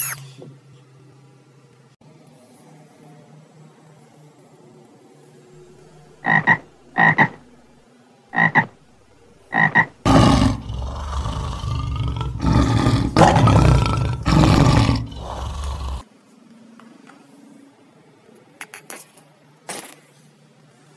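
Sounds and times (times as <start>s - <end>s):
long rough animal call: 9.5s - 16.0s.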